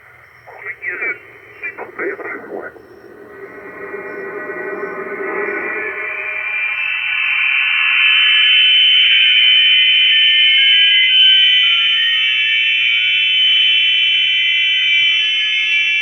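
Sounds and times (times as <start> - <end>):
radio hiss: 0.0 - 7.6
radio high tones: 0.0 - 8.6.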